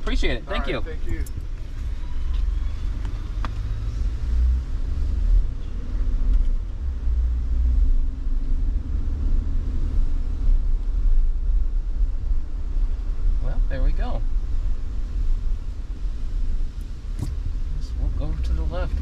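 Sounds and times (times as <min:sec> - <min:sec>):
truck engine and road rumble: 0:00.0 - 0:19.0.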